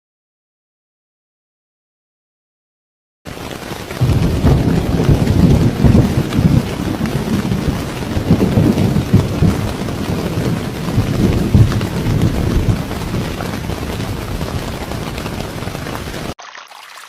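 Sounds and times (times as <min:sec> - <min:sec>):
rain hiss: 0:03.3 - 0:16.4
thunder rumbling: 0:03.5 - 0:16.3.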